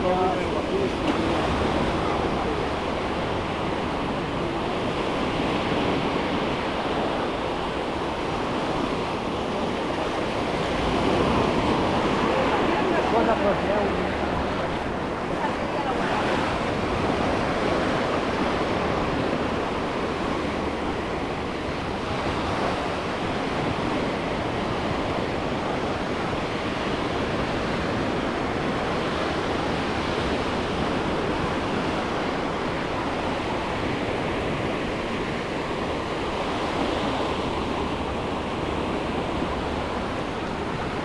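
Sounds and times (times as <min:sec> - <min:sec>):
small waves washing onto beach: 0:00.0 - 0:41.0.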